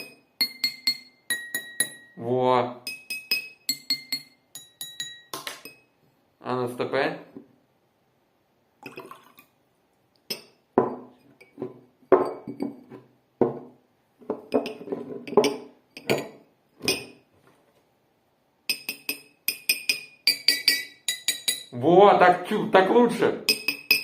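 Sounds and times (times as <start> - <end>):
stick tapping water glasses: 18.7 - 21.7, 23.4 - 24.0.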